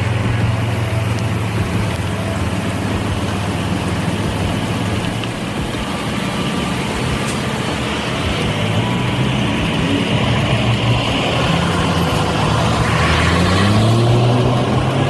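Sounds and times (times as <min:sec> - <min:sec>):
heavy vehicle engine humming: 0:00.0 - 0:15.0.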